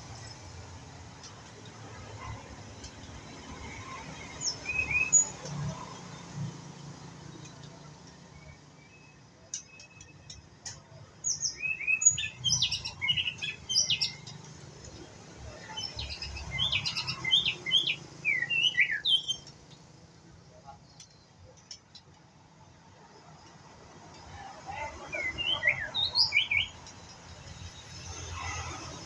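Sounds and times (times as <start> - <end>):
bird whistling song: 4.4 - 5.4, 11.3 - 14.4, 15.7 - 19.6, 25.2 - 26.8
bird chirps: 11.3 - 14.5, 15.6 - 19.6, 25.2 - 27.1.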